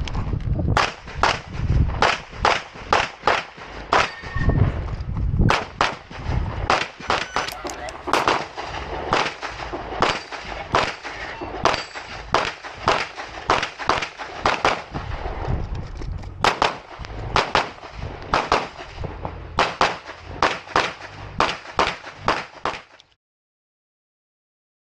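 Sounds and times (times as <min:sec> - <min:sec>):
pistol firing rapid shots: 0:00.8 - 0:04.2, 0:05.5 - 0:15.4, 0:16.4 - 0:19.0, 0:19.6 - 0:22.9.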